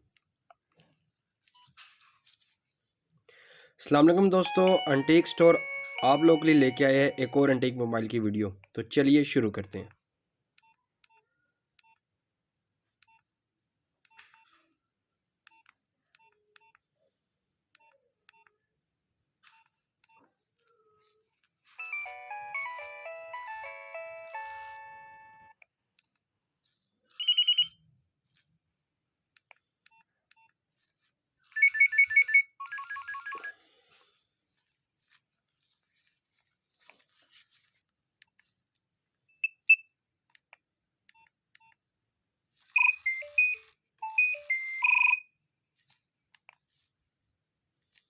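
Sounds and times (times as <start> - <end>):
mobile phone ringtones: 4.3 - 8.2, 21.8 - 25.5, 27.2 - 27.7, 31.7 - 33.5, 42.8 - 45.2.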